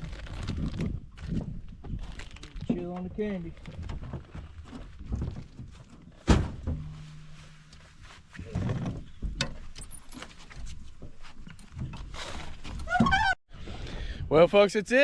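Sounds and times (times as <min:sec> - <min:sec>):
small knocks and rustles: 0:00.4 - 0:12.9
sharp thunk: 0:06.2 - 0:07.4.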